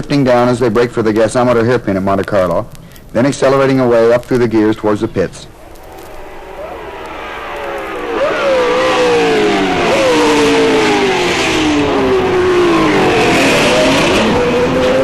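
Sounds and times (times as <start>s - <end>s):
racing engine downshifting: 5.5s - 15.0s.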